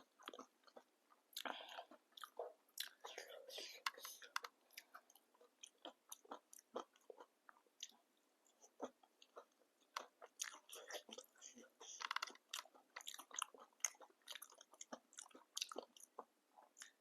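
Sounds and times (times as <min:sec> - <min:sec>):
crunchy food chewing: 0:00.0 - 0:17.0.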